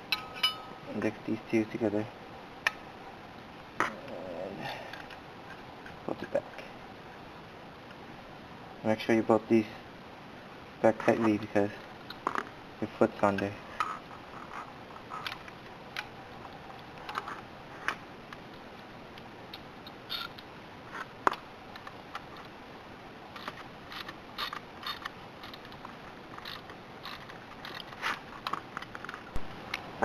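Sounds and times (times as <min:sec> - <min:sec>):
metal tool clicks and taps: 0:00.0 - 0:00.8.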